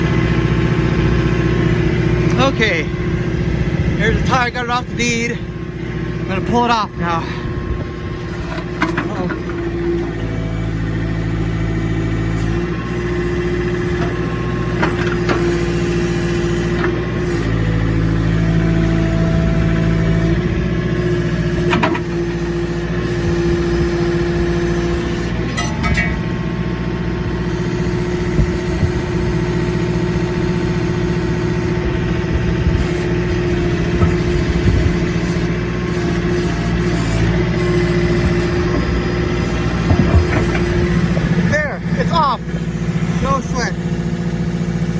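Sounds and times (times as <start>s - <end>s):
diesel engine under load: 0.0s - 44.9s
metal knocks and clanks: 25.5s - 26.4s, 39.9s - 41.5s.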